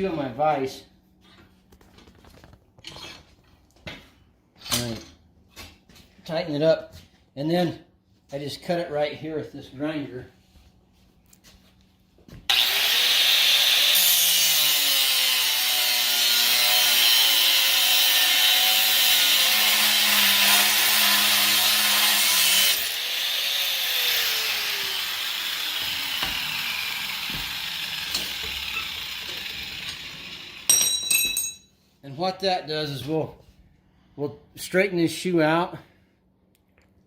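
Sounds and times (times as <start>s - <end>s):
grinder winding down whine: 12.5s - 30.7s
angle grinder cutting steel: 12.5s - 31.0s.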